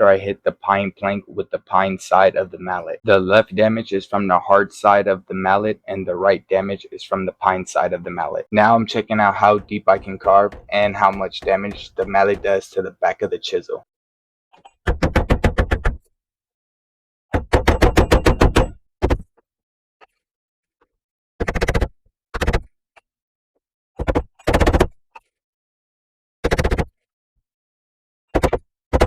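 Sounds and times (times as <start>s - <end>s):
wooden mallet striking chisel: 8.7s - 12.8s.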